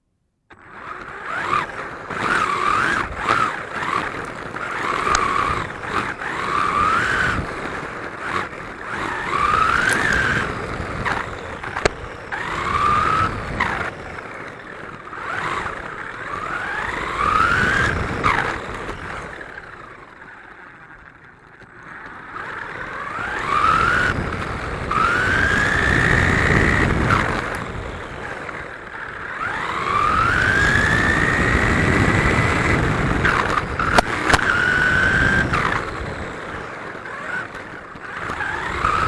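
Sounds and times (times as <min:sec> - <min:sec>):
sharp clicks: 0:00.5 - 0:14.4, 0:32.2 - 0:39.0
chassis rumble and rattle: 0:00.5 - 0:20.2, 0:22.0 - 0:39.0
electric motor whining: 0:00.5 - 0:39.0.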